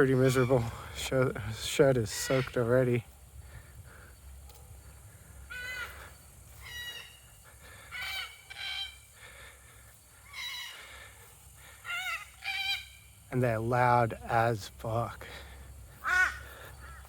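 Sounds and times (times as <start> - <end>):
cockatoos calling harshly: 0.0 - 1.0, 2.0 - 4.2, 4.9 - 13.3, 15.3 - 17.0.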